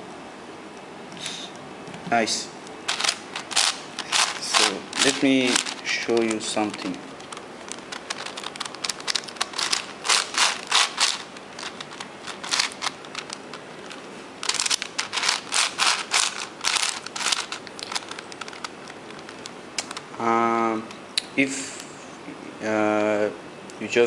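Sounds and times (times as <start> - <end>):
plastic puzzle pieces clicking: 2.9 - 20.1.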